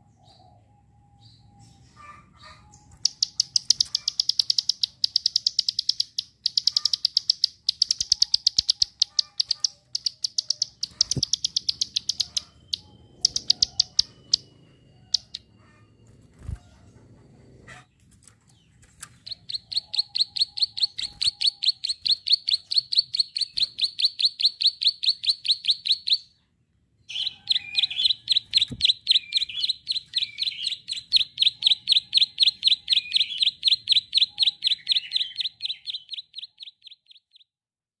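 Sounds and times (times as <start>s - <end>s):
bird sharp high clicking call: 2.8s - 14.5s.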